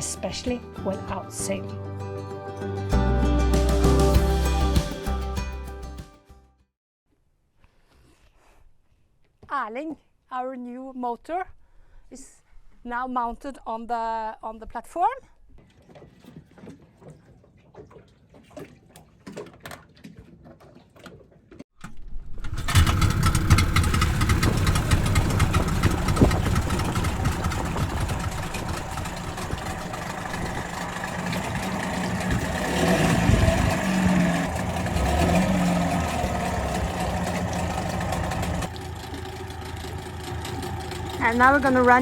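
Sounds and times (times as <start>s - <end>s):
outboard motor running: 22.5s - 42.0s.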